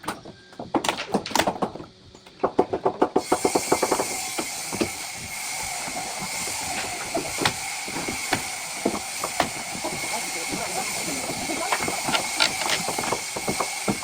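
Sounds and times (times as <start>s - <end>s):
steady hiss: 3.1s - 14.0s
scattered knocks: 7.1s - 14.0s.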